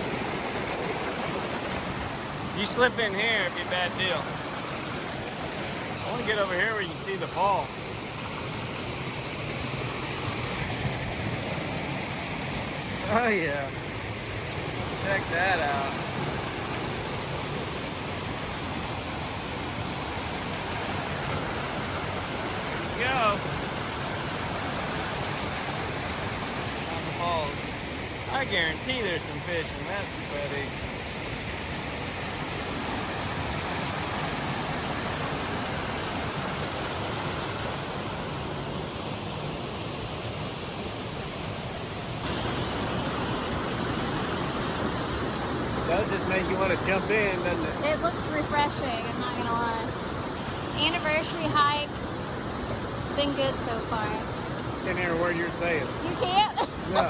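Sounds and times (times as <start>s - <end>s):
waterfall cascading over rocks: 0.0s - 57.0s.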